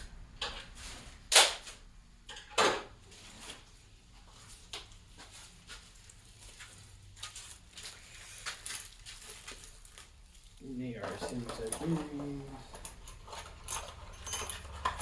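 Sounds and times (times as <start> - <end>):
packaging rustling: 6.0 - 12.6.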